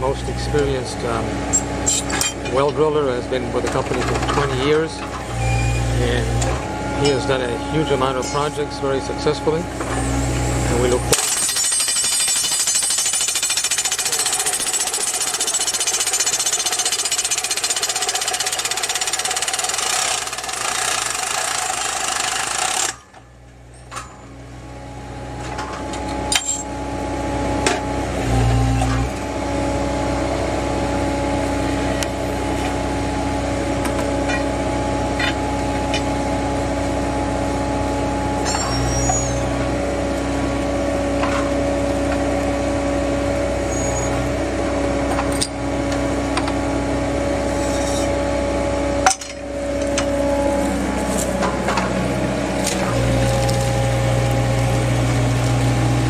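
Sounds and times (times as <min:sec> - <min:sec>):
engine and hydraulics humming: 0:00.0 - 0:56.0
hydraulic hammer pounding: 0:00.0 - 0:56.0
metal clanks: 0:01.5 - 0:02.9, 0:22.8 - 0:24.4, 0:25.4 - 0:26.7, 0:33.9 - 0:34.6.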